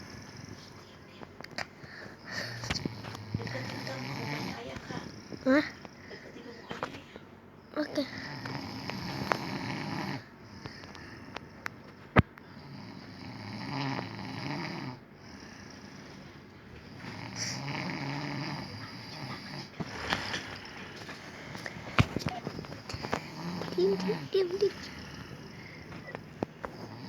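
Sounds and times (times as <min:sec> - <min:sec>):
man snoring: 0:02.4 - 0:05.6, 0:08.2 - 0:10.3, 0:12.6 - 0:16.0, 0:17.0 - 0:25.9, 0:26.7 - 0:27.0.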